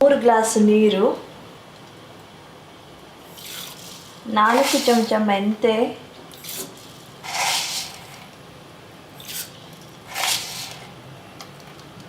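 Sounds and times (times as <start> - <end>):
seeds pouring into water: 6.4 - 8.2.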